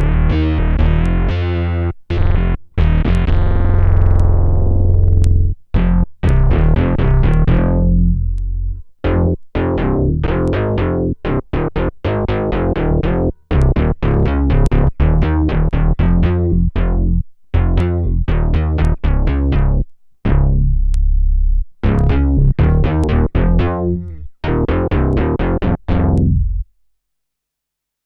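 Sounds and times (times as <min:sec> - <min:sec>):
synth bass notes: 0:00.0 - 0:26.7.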